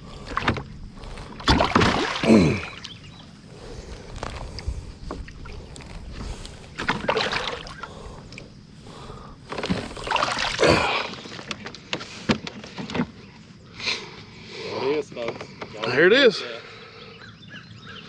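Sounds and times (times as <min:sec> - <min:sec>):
water splashing: 0:01.2 - 0:02.9, 0:06.7 - 0:08.1, 0:09.6 - 0:11.5.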